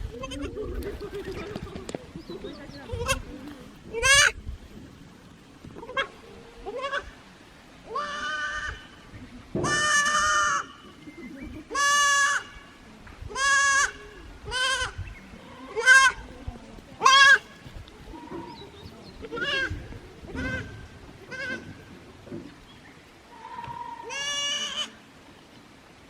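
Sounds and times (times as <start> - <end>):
kid goat bleating: 5.8 - 7.2, 7.9 - 8.9, 9.6 - 10.7, 11.7 - 12.6, 13.3 - 16.3, 17.0 - 21.8, 23.5 - 24.9.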